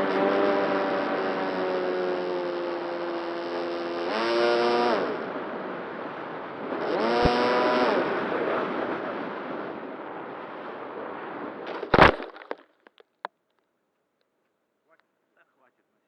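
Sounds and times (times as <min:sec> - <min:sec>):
model plane motor and propeller: 0:00.0 - 0:09.0.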